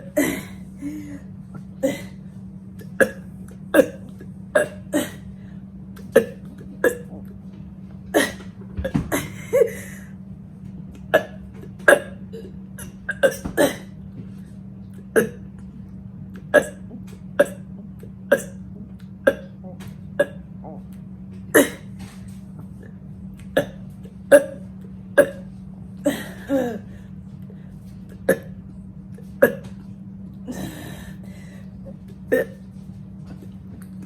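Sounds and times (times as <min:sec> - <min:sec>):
woman burping: 0:00.0 - 0:01.2, 0:01.8 - 0:02.2, 0:02.8 - 0:05.3, 0:06.0 - 0:07.3, 0:08.1 - 0:10.1, 0:11.1 - 0:14.0, 0:15.0 - 0:15.6, 0:16.4 - 0:20.9, 0:21.6 - 0:21.9, 0:23.6 - 0:26.9, 0:28.2 - 0:28.6, 0:29.4 - 0:29.7, 0:32.3 - 0:32.6.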